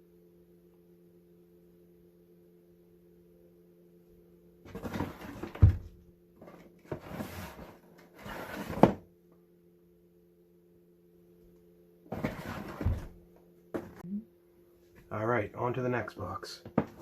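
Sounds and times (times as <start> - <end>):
packaging rustling and scraping: 4.7 - 5.6, 6.4 - 9.0, 12.1 - 13.1.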